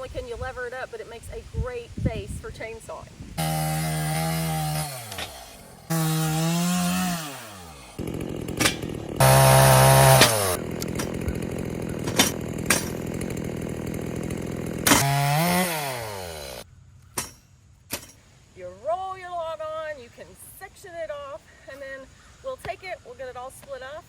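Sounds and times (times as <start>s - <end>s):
chainsaw revving and idling: 3.4s - 16.6s.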